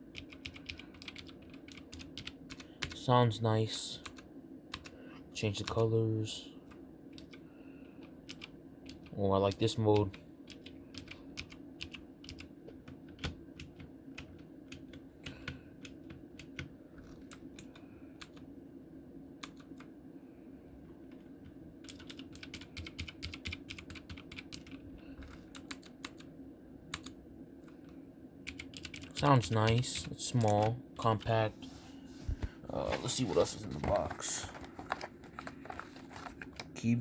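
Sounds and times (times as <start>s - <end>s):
mechanical keyboard typing clicks: 0.1s - 3.0s, 8.2s - 18.4s, 21.8s - 24.8s, 26.9s - 27.2s, 28.5s - 30.7s.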